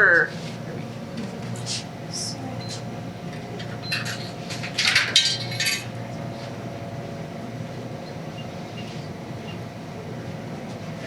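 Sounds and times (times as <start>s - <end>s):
steady low hum: 0.0s - 11.0s
metal token clinking: 3.6s - 6.0s.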